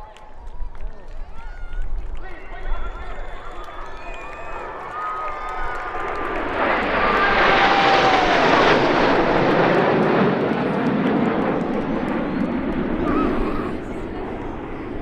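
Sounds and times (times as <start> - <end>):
jets passing fast and low: 5.9 - 15.0.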